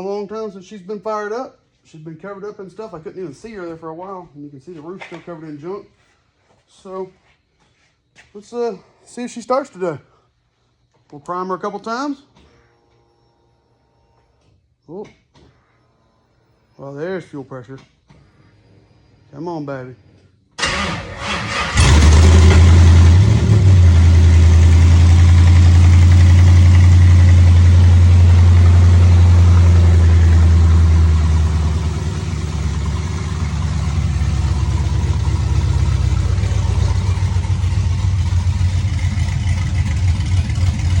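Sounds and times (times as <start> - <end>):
car engine starting and idling: 20.6 - 41.0.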